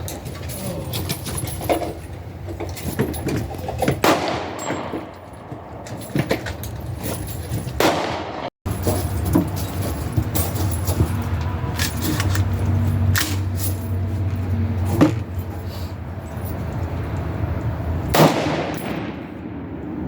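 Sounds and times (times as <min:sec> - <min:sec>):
rifle shots echoing: 0:04.0 - 0:05.6, 0:07.8 - 0:08.5, 0:18.1 - 0:20.0.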